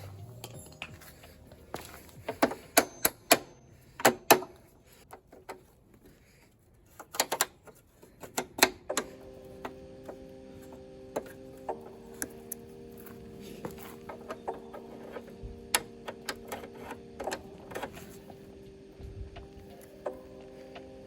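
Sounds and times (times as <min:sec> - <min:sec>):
hand tools clinking on metal: 0:00.0 - 0:04.7.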